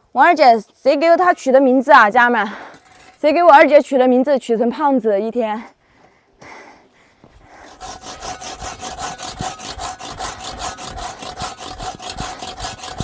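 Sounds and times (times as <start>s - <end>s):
hand saw cutting wood: 7.6s - 13.0s.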